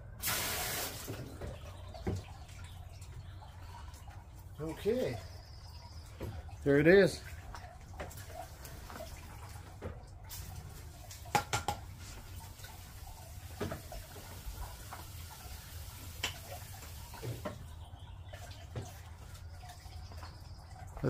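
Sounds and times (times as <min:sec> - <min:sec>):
water splashing: 0:00.1 - 0:21.0.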